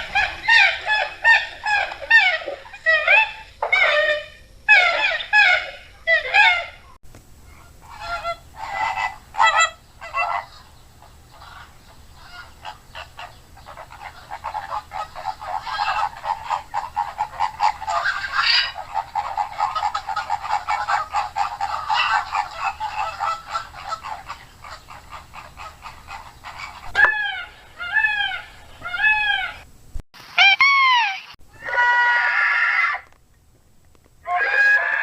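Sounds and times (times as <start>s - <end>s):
creature calls: 13.9s - 29.7s, 30.4s - 33.1s, 34.2s - 35.0s.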